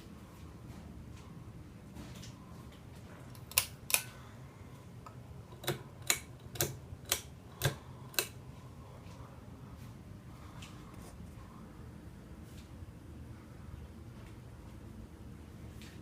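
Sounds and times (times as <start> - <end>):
ceiling fan clicking: 0.0 - 9.2
faint low hum: 0.0 - 16.0.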